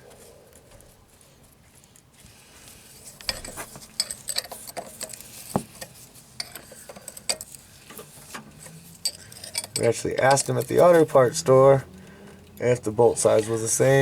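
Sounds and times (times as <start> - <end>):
wrench clicking on metal fittings: 8.5 - 11.1.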